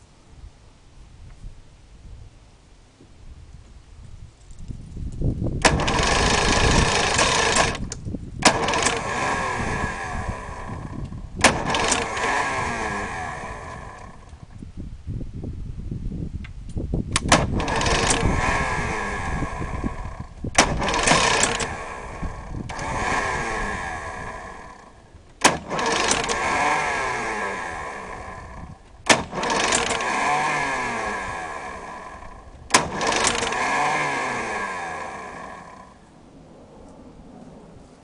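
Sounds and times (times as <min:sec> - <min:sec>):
outboard motor cranking: 0:05.6 - 0:14.5, 0:17.1 - 0:36.0.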